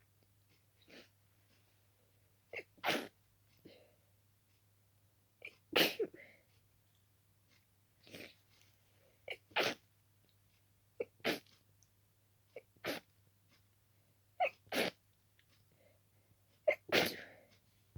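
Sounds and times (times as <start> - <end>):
person sneezing: 2.6 - 3.1, 5.8 - 6.2, 16.8 - 17.3.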